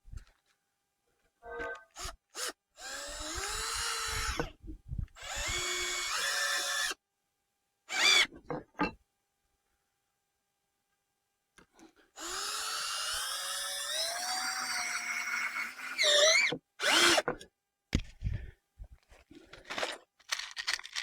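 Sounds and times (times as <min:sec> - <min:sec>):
cordless drill driving screws: 0:02.0 - 0:04.5, 0:05.2 - 0:07.0, 0:07.9 - 0:08.3, 0:12.2 - 0:17.3.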